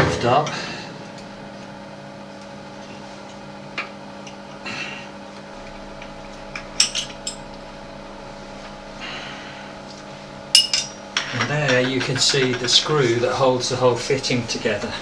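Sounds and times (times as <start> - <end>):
extractor fan humming: 0.0 - 15.0.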